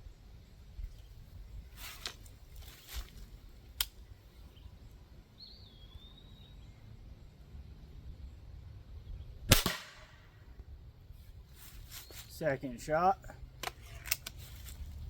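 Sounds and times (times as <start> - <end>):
low outdoor rumble: 0.0 - 15.0
rustling: 1.7 - 3.4, 11.5 - 12.4, 13.7 - 15.0
air rifle sharp click: 9.5 - 10.3.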